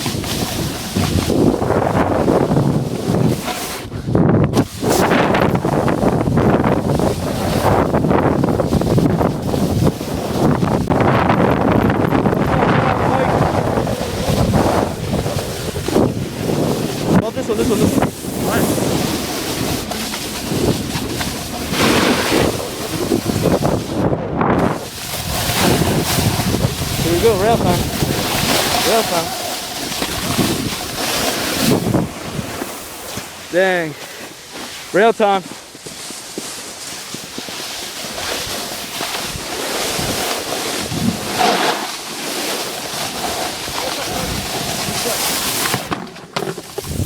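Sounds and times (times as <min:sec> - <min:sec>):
wind buffeting microphone: 0:00.0 - 0:33.8, 0:39.2 - 0:41.5, 0:43.1 - 0:46.0, 0:46.6 - 0:47.0
board sliding on snow: 0:00.0 - 0:47.0.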